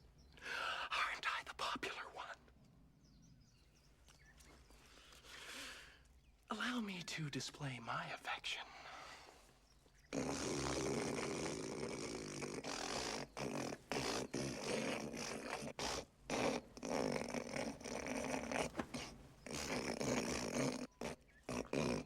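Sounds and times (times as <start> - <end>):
man hawking phlegm: 10.1 - 22.0
man snorting: 10.1 - 22.0.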